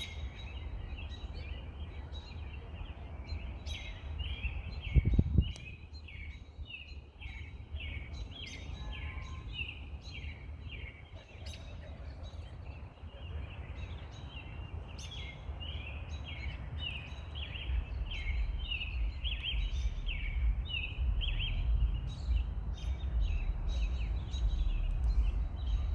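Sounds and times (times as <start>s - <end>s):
birds chirping: 0.0s - 25.9s
low rumble: 17.6s - 25.9s.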